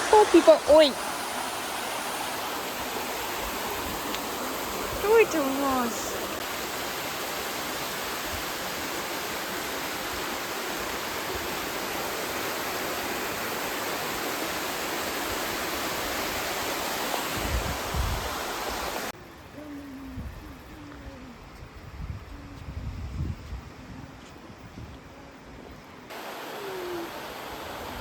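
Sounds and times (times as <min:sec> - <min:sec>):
flowing water rushing: 0:00.0 - 0:19.2, 0:26.1 - 0:28.0.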